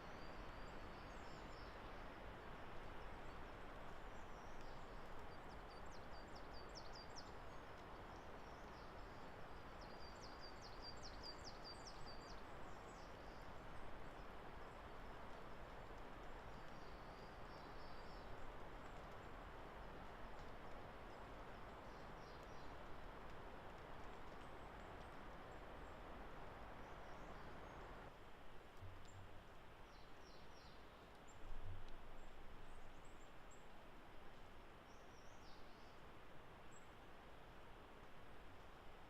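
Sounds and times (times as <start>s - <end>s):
wild bird song: 0.0s - 2.0s, 2.9s - 14.9s, 16.2s - 19.0s, 21.2s - 22.8s
forest ambience hiss: 0.0s - 39.0s.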